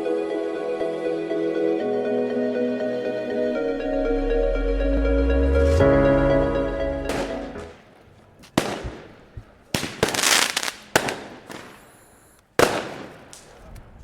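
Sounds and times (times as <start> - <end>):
firecracker bangs: 7.1 - 13.7
firecracker crackling: 7.1 - 14.0.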